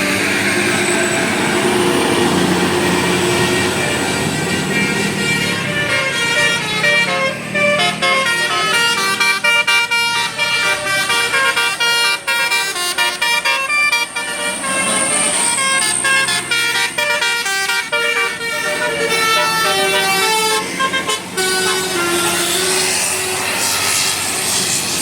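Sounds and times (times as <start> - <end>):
bus musical horn melody: 0.0 - 25.0.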